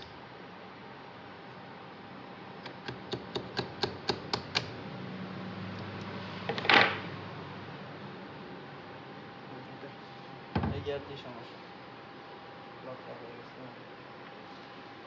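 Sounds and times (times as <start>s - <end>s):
sharp taps on metal: 2.6s - 4.7s.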